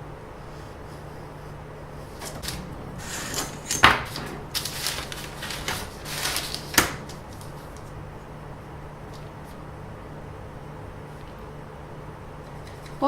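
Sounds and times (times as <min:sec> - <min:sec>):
handling rustles and clicks: 0:02.2 - 0:08.0.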